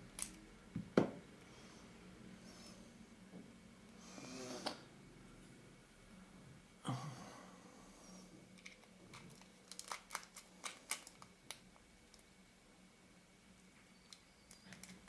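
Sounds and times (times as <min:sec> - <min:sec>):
soft knock: 0:00.8 - 0:01.2.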